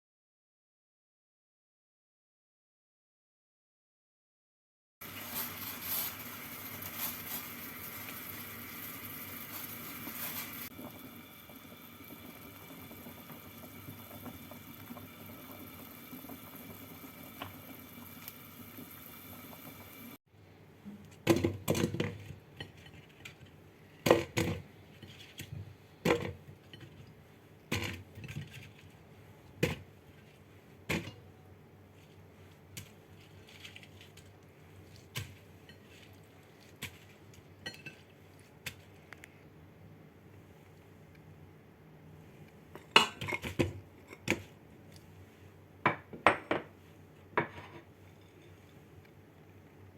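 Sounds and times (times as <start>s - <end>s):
steady hum and hiss: 5.0s - 49.9s
kitchenware clinking and knocking: 21.3s - 23.0s, 42.8s - 44.4s, 45.9s - 46.7s.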